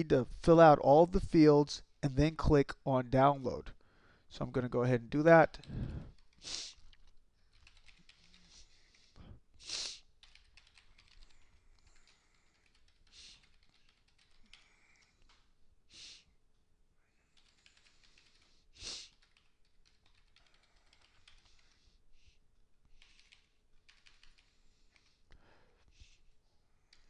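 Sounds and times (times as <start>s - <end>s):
computer keyboard typing: 5.6s - 9.2s, 10.1s - 15.5s, 17.2s - 21.9s, 22.9s - 25.2s.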